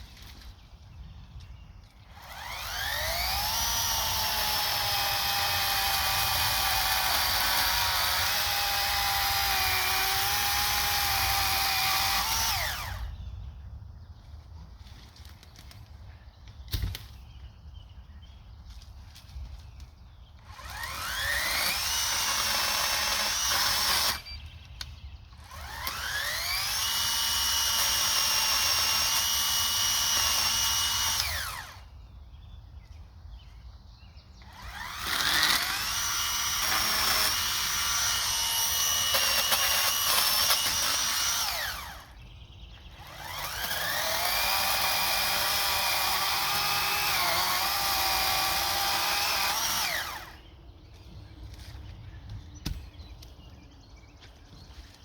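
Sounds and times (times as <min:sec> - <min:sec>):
electric chainsaw cutting wood: 0:02.1 - 0:13.2, 0:20.4 - 0:24.4, 0:25.4 - 0:31.9, 0:34.4 - 0:42.2, 0:42.9 - 0:50.5.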